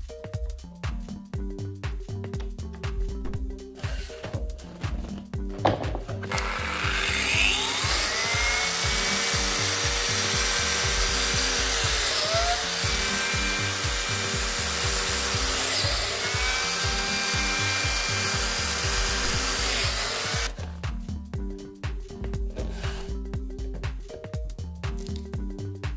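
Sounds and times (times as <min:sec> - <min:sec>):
background music with steady beat: 0:00.0 - 0:25.9
power tool cutting wood: 0:06.3 - 0:20.6.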